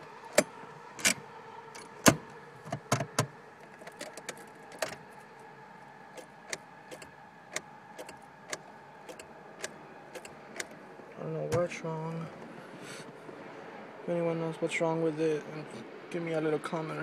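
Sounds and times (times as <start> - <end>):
faint steady whine: 0.0 - 17.0
car starter clicking: 6.2 - 10.8.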